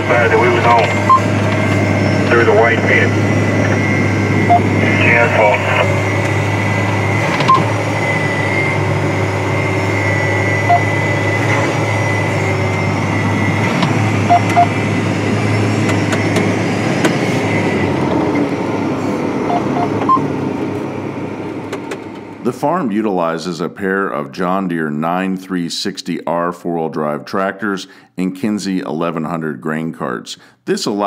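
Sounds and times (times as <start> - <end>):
farm machinery engine drone: 0.0 - 22.8
high whine: 0.0 - 23.1
short electronic beeps: 1.0 - 1.3, 4.4 - 4.7, 10.6 - 11.0, 14.3 - 14.8, 19.5 - 20.2.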